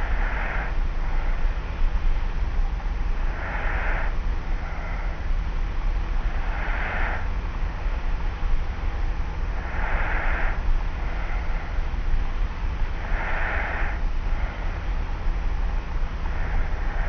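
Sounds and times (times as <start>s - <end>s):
low rumble and hiss: 0.0s - 17.0s
light snoring breaths: 6.2s - 8.0s, 9.5s - 12.0s, 12.8s - 15.0s, 16.1s - 17.0s.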